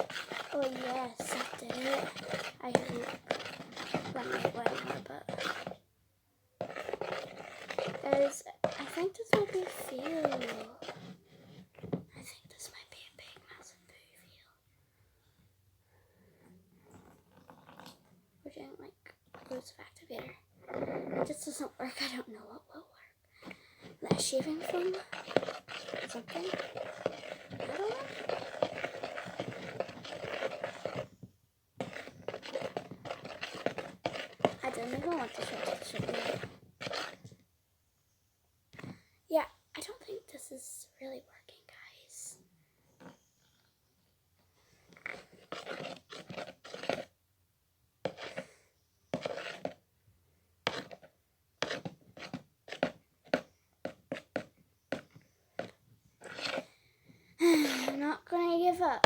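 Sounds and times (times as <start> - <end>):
slime stirred in a bowl: 0.0 - 5.9, 6.6 - 12.7, 16.3 - 22.4, 23.4 - 31.2, 31.8 - 37.4, 44.6 - 47.2, 48.0 - 49.9, 50.7 - 56.8, 57.4 - 59.0.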